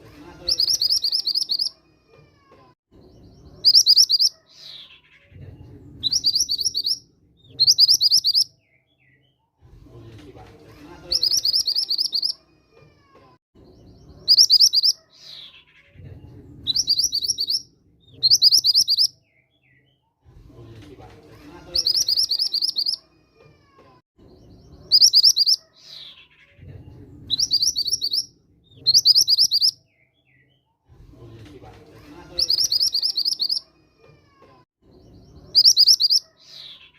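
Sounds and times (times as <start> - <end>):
bird singing trilled phrases: 0.4 - 1.8, 3.0 - 5.4, 6.0 - 9.4, 11.1 - 12.4, 13.6 - 20.0, 21.7 - 23.0, 24.3 - 30.6, 32.3 - 33.7, 34.9 - 36.9
low background murmur: 9.4 - 18.9, 20.0 - 29.6, 30.6 - 36.6.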